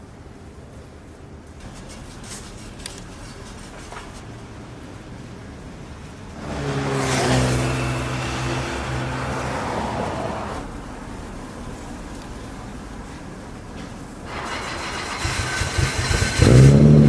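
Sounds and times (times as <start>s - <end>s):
car engine driving past: 6.4s - 10.8s.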